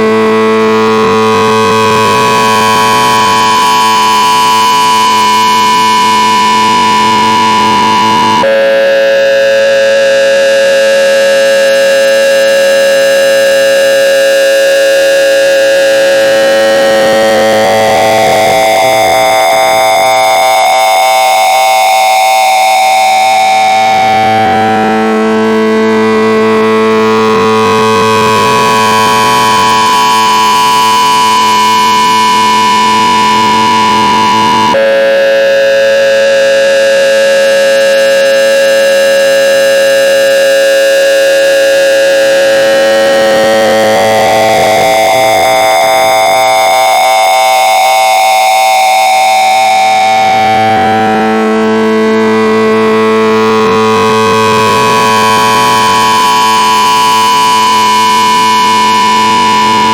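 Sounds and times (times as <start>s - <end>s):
harsh electronic drone: 0.0s - 59.9s.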